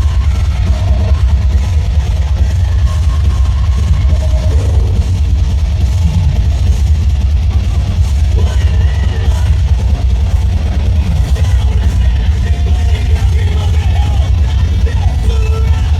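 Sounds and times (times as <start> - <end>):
live rock music: 0.0 - 15.9.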